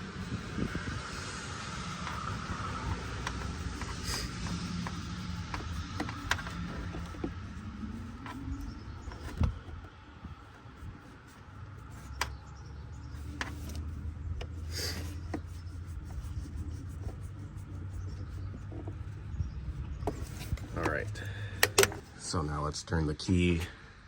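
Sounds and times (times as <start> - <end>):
low steady rumble: 0.0 - 24.0
tools clicking and knocking on engine: 2.1 - 10.0, 20.0 - 22.2.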